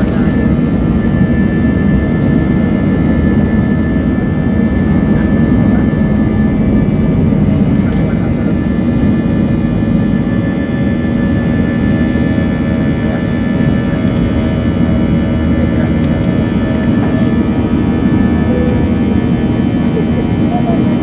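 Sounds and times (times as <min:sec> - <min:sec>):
jet engine cabin drone: 0:00.0 - 0:21.0
steady high-pitched tone: 0:14.7 - 0:19.7.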